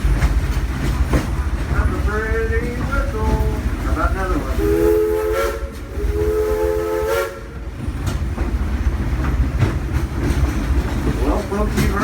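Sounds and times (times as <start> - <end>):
low rumble of train running: 0.0 - 12.0
steam locomotive whistle: 4.5 - 7.6.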